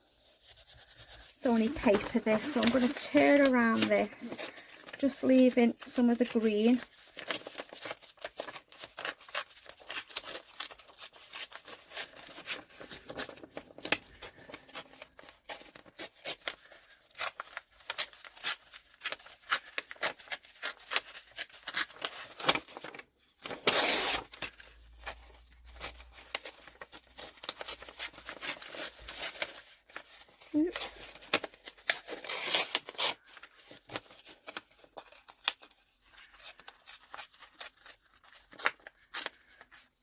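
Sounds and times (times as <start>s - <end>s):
card being torn by hand: 23.4s - 24.8s, 30.7s - 34.2s.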